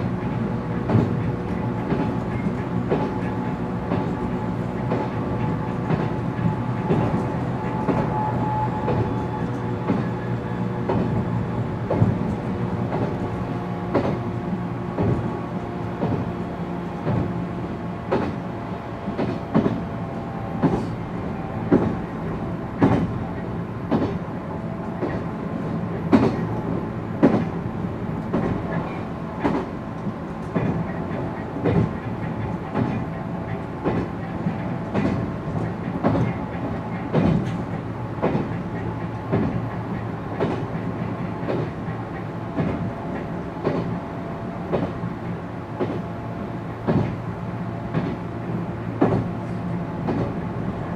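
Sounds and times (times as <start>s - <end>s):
wheels clicking over rail joints: 18.0s - 18.5s, 28.2s - 44.0s, 47.9s - 50.9s.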